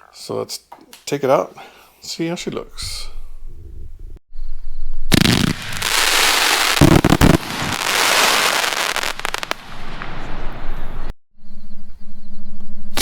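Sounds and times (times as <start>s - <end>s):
fireworks crackle: 5.1s - 11.0s
fireworks launches and bangs: 5.1s - 11.1s.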